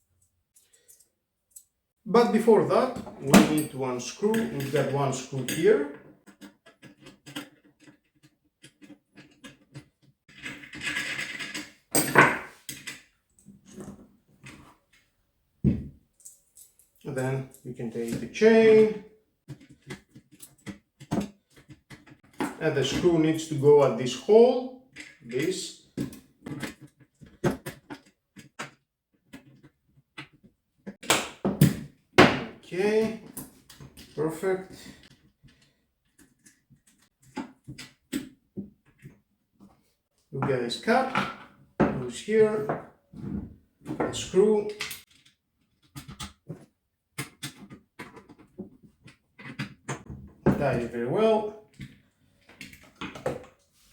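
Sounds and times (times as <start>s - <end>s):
small parts clicking and rattling: 0.2s - 1.8s, 16.1s - 18.2s, 44.7s - 46.3s.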